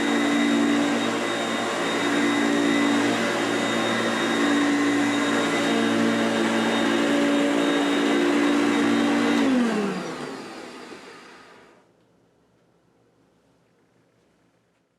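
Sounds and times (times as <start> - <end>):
upright vacuum running: 0.0 - 11.8.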